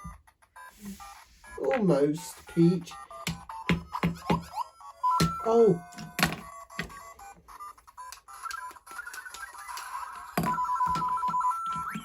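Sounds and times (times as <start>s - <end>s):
electronic game beeps and jingles: 0.0s - 12.0s
toy figure knocking on plastic bricks: 3.2s - 4.5s, 5.2s - 7.0s.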